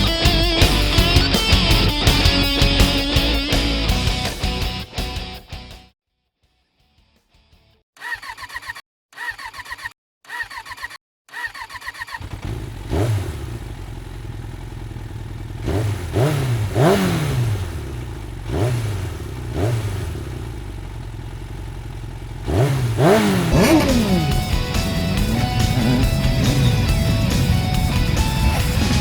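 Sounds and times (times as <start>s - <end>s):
motorcycle engine idling: 0.0s - 4.1s, 12.2s - 29.0s
music: 0.0s - 7.8s, 23.8s - 29.0s
engine throttle blips: 12.0s - 29.0s.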